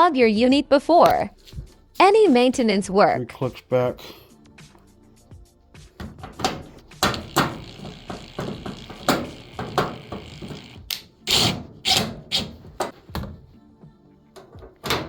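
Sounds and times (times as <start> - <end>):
dryer parts clicking into place: 6.0 - 13.6, 14.4 - 15.0.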